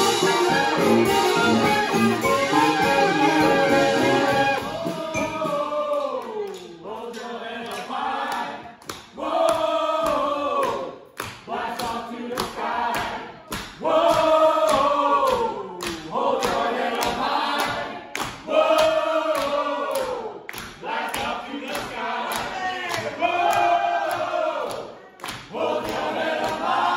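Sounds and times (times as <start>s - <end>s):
brass band horns with falling slides: 0.0s - 5.9s
steady drum beat: 0.0s - 5.9s.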